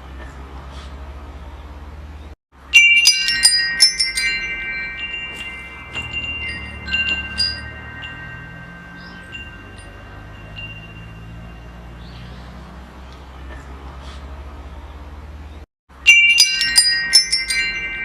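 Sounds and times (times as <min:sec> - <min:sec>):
wind chimes ringing: 0:02.6 - 0:12.8, 0:15.9 - 0:18.0.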